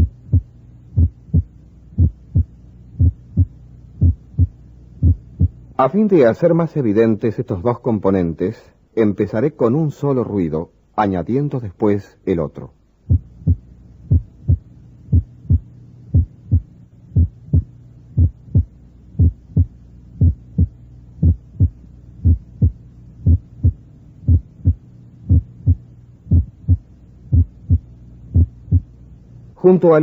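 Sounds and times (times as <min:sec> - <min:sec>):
heartbeat thuds: 0:00.0 - 0:05.6, 0:13.1 - 0:28.9
low hum: 0:00.0 - 0:06.9, 0:12.6 - 0:30.0.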